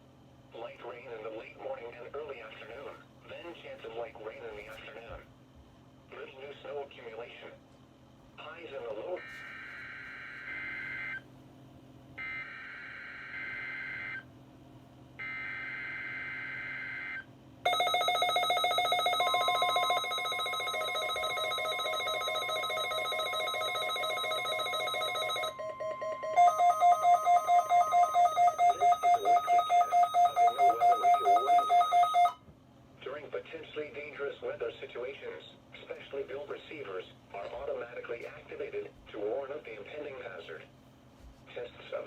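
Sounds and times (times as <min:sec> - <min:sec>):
rapid beeping: 0:17.7 - 0:32.4.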